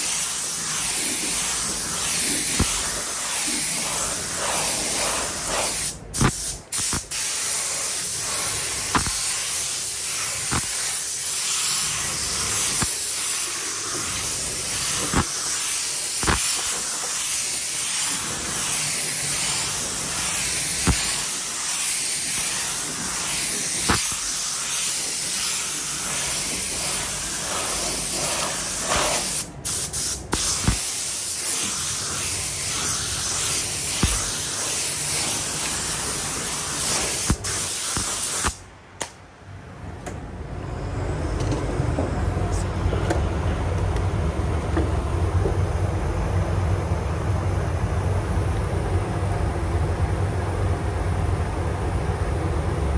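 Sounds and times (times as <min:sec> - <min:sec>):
paint spray gun hissing: 0:00.0 - 0:38.6.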